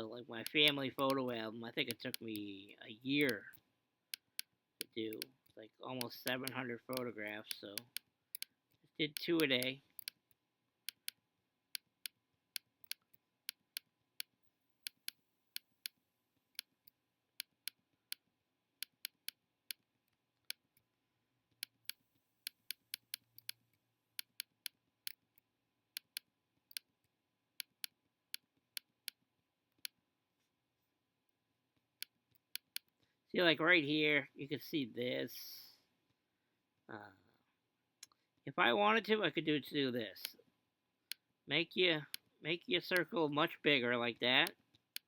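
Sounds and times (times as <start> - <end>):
computer mouse clicking: 6.0 - 10.3, 10.9 - 18.2, 21.6 - 23.6.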